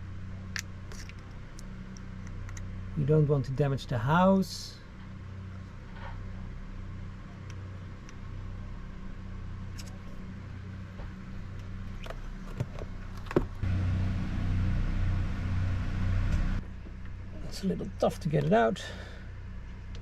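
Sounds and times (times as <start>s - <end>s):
low mechanical hum: 0.0s - 20.0s
clicks and scrapes of prying: 0.6s - 2.7s.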